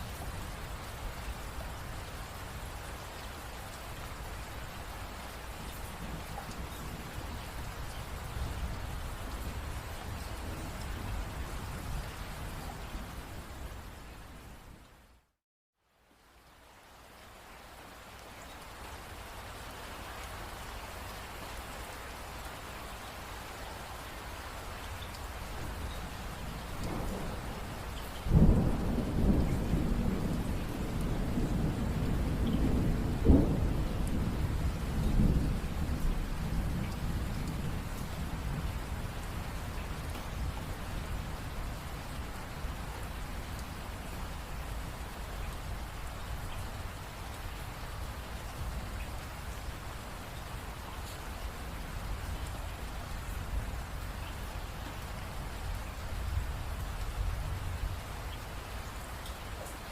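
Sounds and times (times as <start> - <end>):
steady rain: 0.0 - 59.9
thunder rumbling: 26.7 - 39.5.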